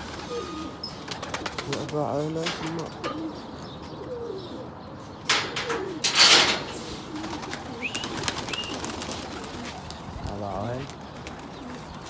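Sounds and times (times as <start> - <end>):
pigeons cooing: 0.0 - 12.0
rustling burst: 5.3 - 7.5.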